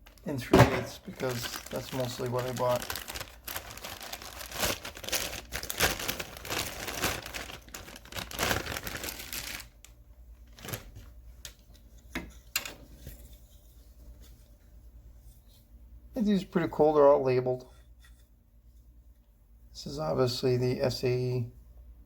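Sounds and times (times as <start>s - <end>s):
plastic packaging crinkling and tearing: 0.0s - 11.6s.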